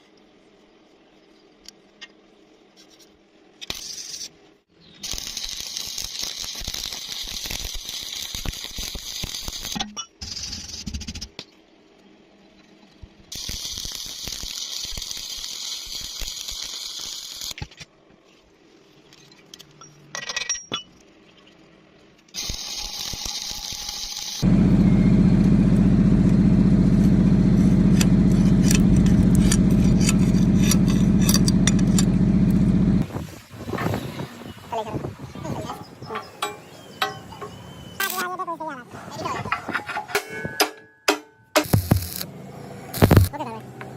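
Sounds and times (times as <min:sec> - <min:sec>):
welding arc crackling and hissing: 0:05.0 - 0:11.2, 0:13.2 - 0:17.6, 0:22.4 - 0:24.8, 0:25.6 - 0:34.8, 0:41.6 - 0:42.3, 0:42.9 - 0:43.4
loud steady low hum: 0:24.4 - 0:33.0.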